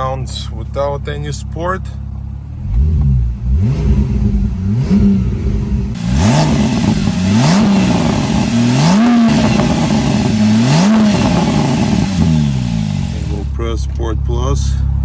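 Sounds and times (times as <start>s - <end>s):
car engine accelerating: 2.5s - 13.6s.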